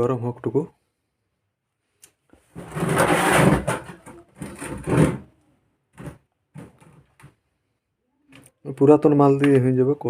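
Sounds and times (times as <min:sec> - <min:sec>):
scraping on a hard surface: 0:02.4 - 0:05.4.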